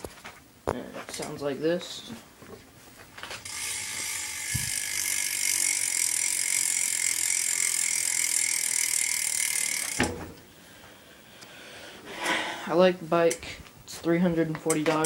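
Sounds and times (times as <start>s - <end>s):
bike hub ratcheting clicks: 3.4s - 10.0s.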